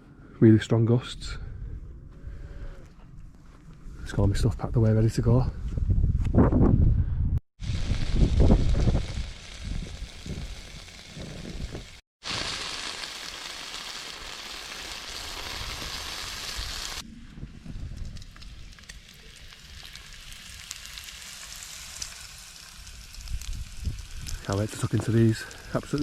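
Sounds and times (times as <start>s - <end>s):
wind rumble on microphone: 1.4s - 12.0s, 15.6s - 20.0s, 23.1s - 26.0s
bacon sizzling in a pan: 7.6s - 17.0s, 18.6s - 26.0s.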